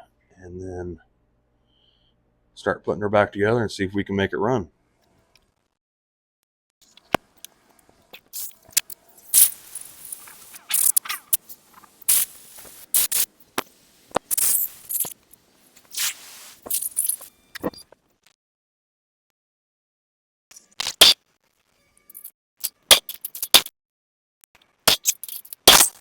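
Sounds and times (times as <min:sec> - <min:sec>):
compressed air blasts hissing: 0:09.3 - 0:13.3, 0:13.9 - 0:15.2, 0:15.9 - 0:16.9.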